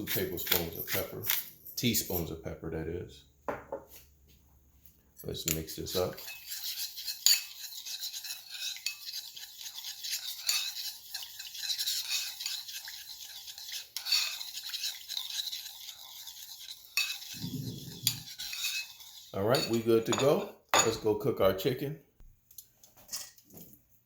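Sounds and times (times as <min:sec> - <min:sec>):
utensil stirring sauce in a bowl: 0:00.0 - 0:01.4, 0:05.2 - 0:21.3.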